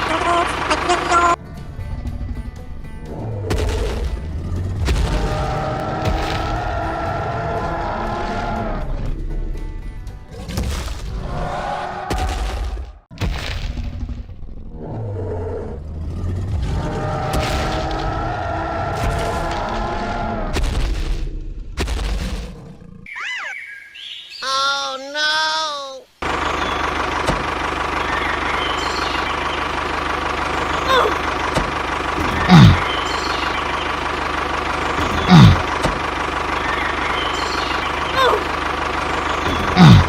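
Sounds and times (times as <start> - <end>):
engine running: 0.0 - 12.1, 13.6 - 23.1, 26.2 - 40.0.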